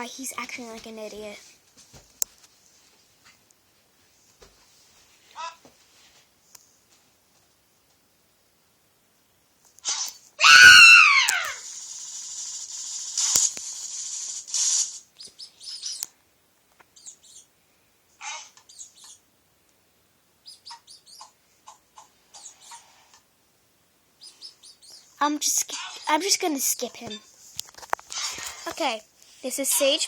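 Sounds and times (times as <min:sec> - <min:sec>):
steady hiss: 0:11.0 - 0:18.2.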